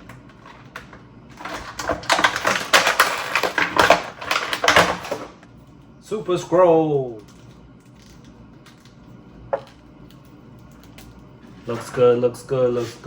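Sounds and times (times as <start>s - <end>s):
plastic packaging crinkling: 0.0s - 5.5s.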